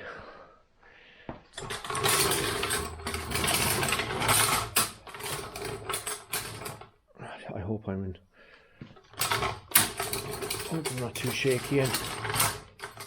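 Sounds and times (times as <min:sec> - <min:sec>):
jack mechanism running and rattling: 0:01.6 - 0:06.9, 0:09.1 - 0:13.0.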